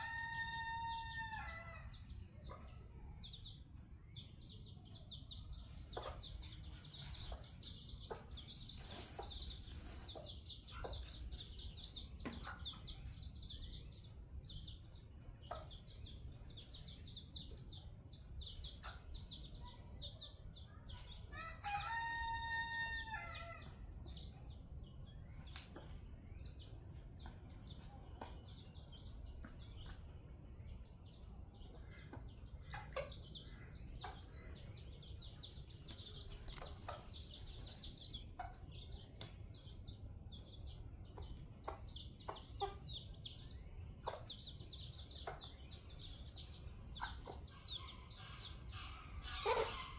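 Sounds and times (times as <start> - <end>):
chicks peeping: 0.0 - 49.9.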